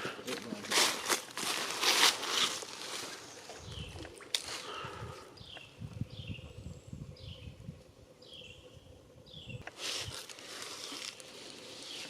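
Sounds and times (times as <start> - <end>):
rustling hiss with clicks: 9.6 - 12.0.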